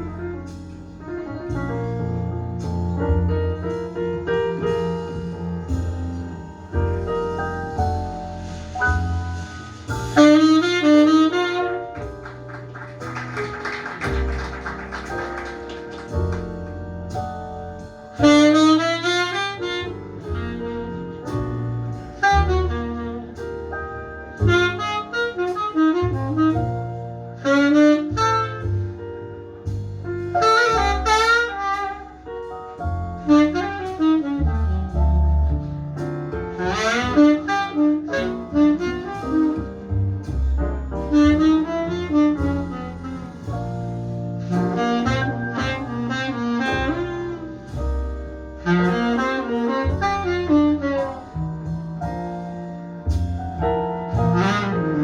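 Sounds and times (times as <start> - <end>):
low bass line: 0.0 - 55.0
tenor saxophone slow melody: 10.2 - 12.1, 18.2 - 20.8, 27.4 - 28.6, 44.7 - 47.7, 48.6 - 51.2.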